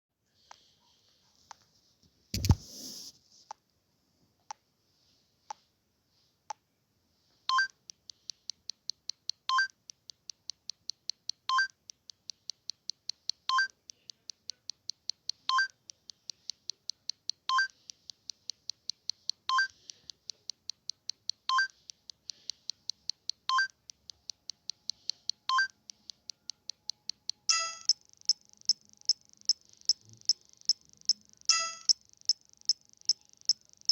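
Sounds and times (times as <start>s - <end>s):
two-tone beep: 27.5s - 28.0s, 31.1s - 32.0s
short high beeps: 27.5s - 32.0s.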